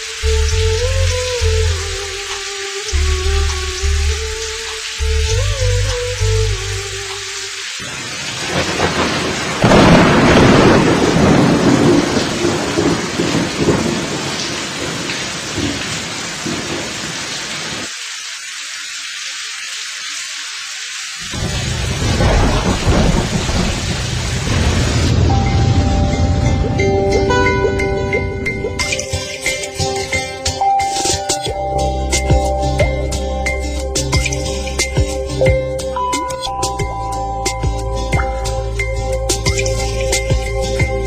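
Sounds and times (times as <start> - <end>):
heavy rain: 0.0 - 41.0
rumbling thunder: 7.8 - 16.9, 21.3 - 29.0.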